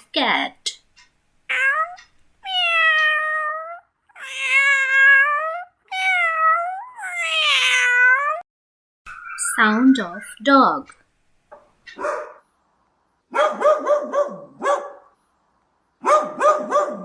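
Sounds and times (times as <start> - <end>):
cat meowing: 1.5 - 8.4.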